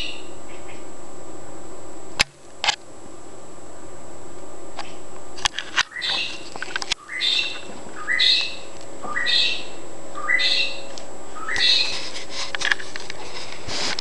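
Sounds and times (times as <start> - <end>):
bird calling harsh rising note: 5.9 - 12.1.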